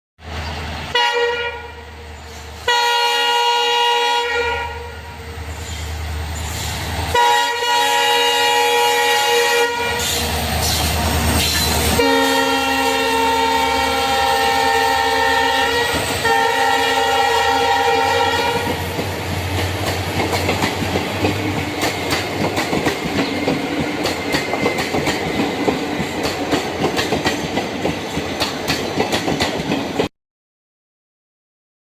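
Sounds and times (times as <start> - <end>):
train horn blasts: 0.9 - 2.0, 2.6 - 5.4, 7.1 - 10.3, 11.7 - 18.9
train wheels clacking on rails: 10.0 - 12.6, 18.5 - 30.1.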